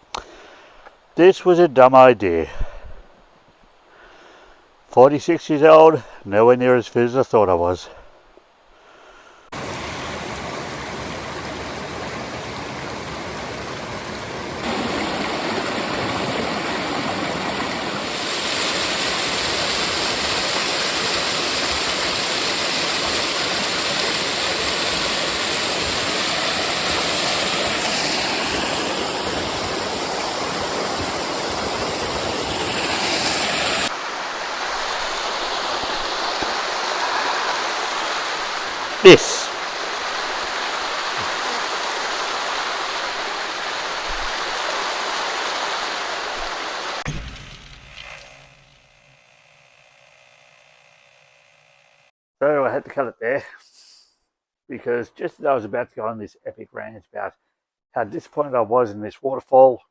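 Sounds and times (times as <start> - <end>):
small waterfall splashing: 9.5 - 49.1.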